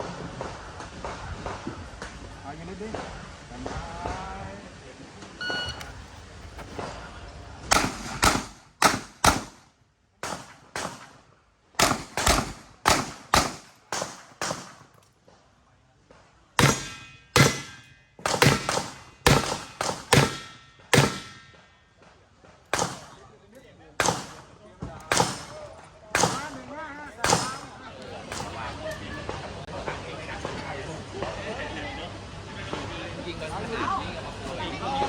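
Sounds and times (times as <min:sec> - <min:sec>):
shot timer beep: 0:05.4 - 0:05.9
revolver firing shots: 0:07.7 - 0:09.6, 0:11.8 - 0:14.9, 0:16.6 - 0:21.5, 0:22.7 - 0:23.2, 0:24.0 - 0:26.6, 0:27.2 - 0:28.6.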